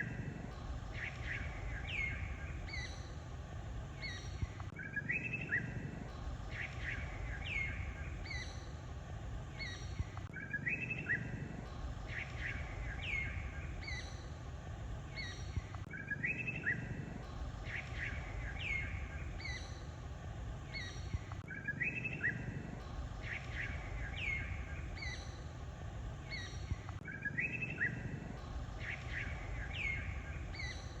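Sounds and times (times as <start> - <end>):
small birds chirping: 0.0 - 31.0
steady low rumble: 0.0 - 31.0.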